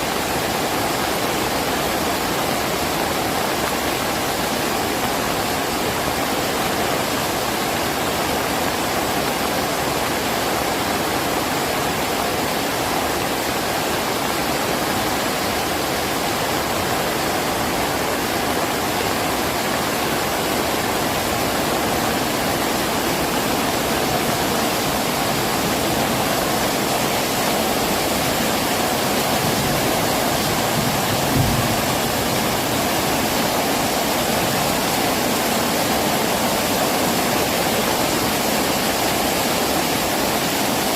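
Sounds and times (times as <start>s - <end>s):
heavy rain falling: 0.0s - 40.9s.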